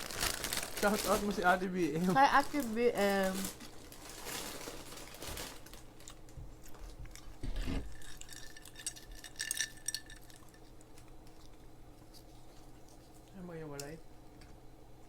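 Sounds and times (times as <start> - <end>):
glass and tableware clinking: 8.0 - 10.5.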